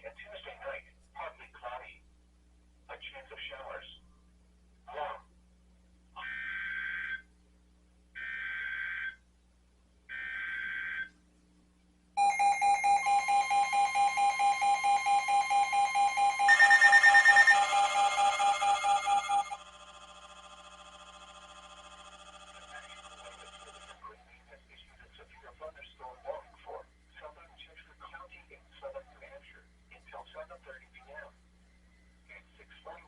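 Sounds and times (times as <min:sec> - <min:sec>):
higher alert tone: 0:12.2 - 0:19.6
loud pulsing alert tone: 0:12.2 - 0:20.4
warbling digital data tones: 0:12.2 - 0:23.9.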